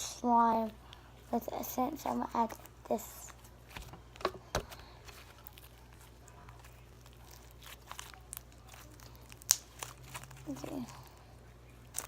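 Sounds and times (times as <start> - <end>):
hands squishing slime: 2.0 - 12.0
slime crackles and clicks: 5.4 - 10.9.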